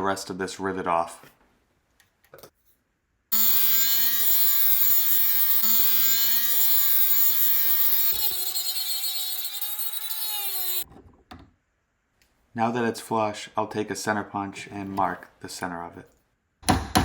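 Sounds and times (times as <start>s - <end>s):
power grinder grinding metal: 3.3s - 10.8s.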